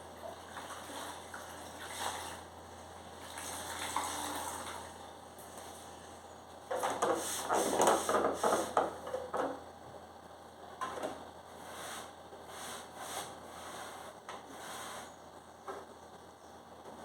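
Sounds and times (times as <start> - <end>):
clattering knocks and scrapes: 6.7 - 9.6.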